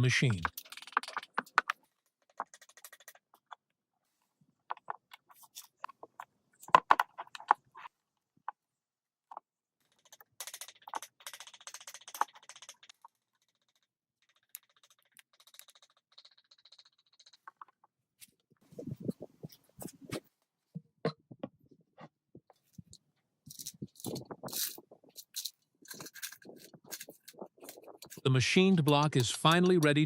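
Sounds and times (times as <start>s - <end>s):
engine parts and tools clattering: 23.6s - 30.0s.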